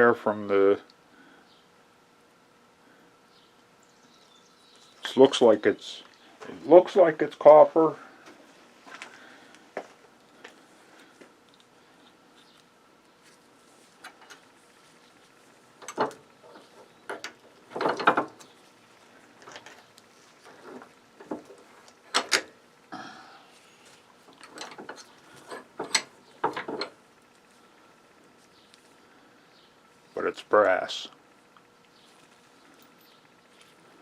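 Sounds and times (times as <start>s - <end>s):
small parts clicking and clattering: 15.8s - 18.5s, 19.3s - 22.5s, 23.8s - 27.0s.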